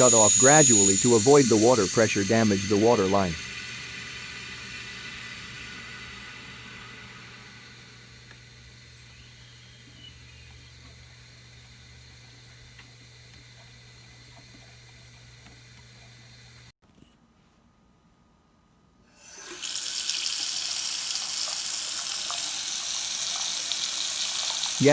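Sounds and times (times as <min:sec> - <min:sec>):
water rushing through pipes: 0:00.0 - 0:09.2, 0:19.2 - 0:24.9.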